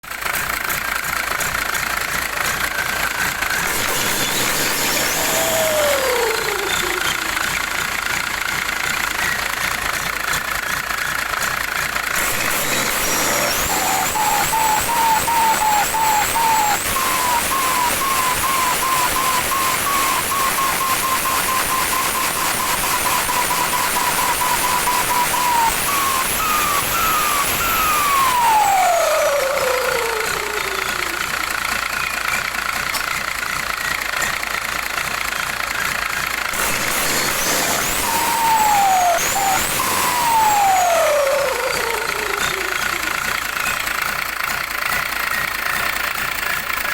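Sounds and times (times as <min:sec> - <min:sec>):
engine running: 0:00.0 - 0:46.9
turbo whistle: 0:02.7 - 0:08.3, 0:12.2 - 0:32.4, 0:36.6 - 0:43.8.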